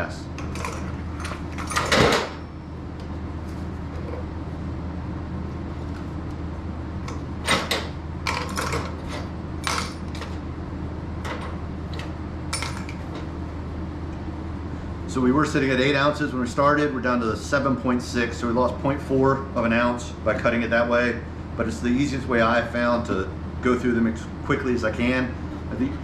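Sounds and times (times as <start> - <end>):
metal parts clinking: 12.5 - 13.0.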